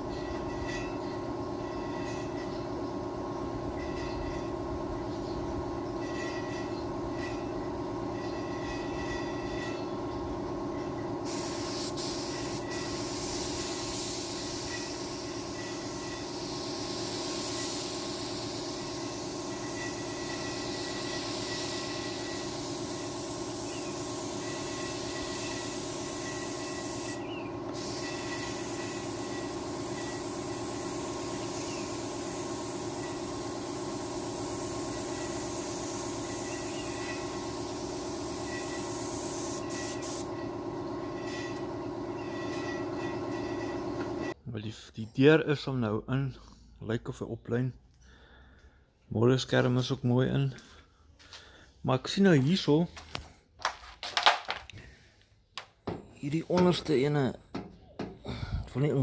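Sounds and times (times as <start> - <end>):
hiss: 11.2 - 40.4.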